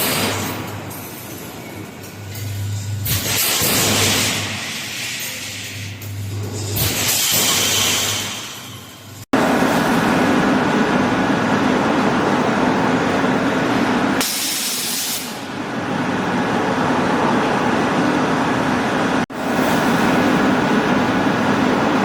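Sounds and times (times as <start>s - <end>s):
air hiss: 14.2s - 15.5s.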